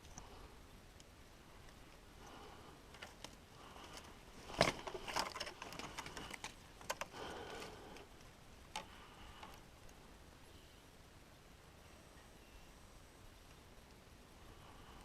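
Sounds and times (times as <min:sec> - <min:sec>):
small clicks and scrapes: 0:02.9 - 0:10.0.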